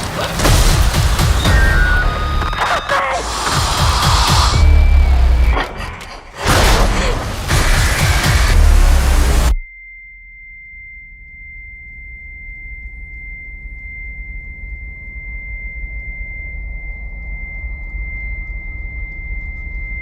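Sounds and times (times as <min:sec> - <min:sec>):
low rumble: 0:03.3 - 0:09.6
high pure ringing tone: 0:09.6 - 0:20.0.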